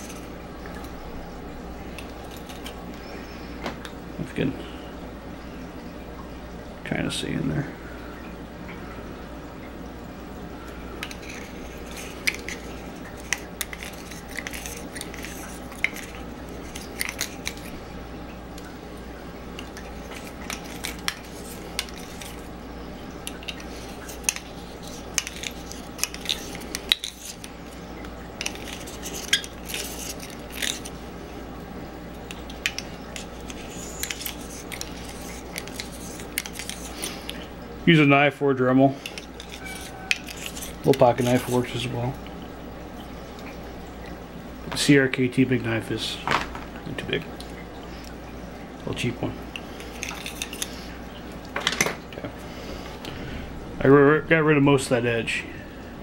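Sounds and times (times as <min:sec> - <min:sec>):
steady low hum: 0:00.0 - 0:56.0
knife scraping plastic pipe: 0:11.0 - 0:17.8, 0:20.0 - 0:22.5, 0:23.3 - 0:27.6, 0:28.4 - 0:31.0, 0:32.6 - 0:37.4, 0:39.0 - 0:41.6, 0:49.6 - 0:50.9.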